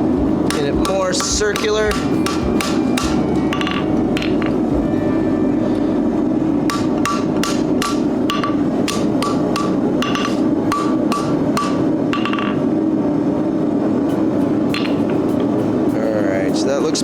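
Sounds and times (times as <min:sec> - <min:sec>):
hammer striking steel on anvil: 0:00.4 - 0:04.7, 0:06.6 - 0:12.8, 0:14.7 - 0:15.4.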